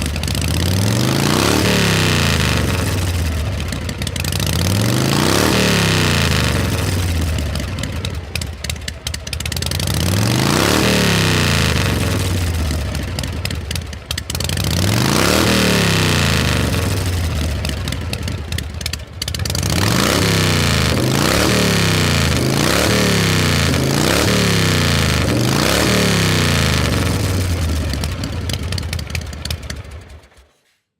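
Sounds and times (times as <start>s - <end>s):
engine revving: 0.0s - 30.5s.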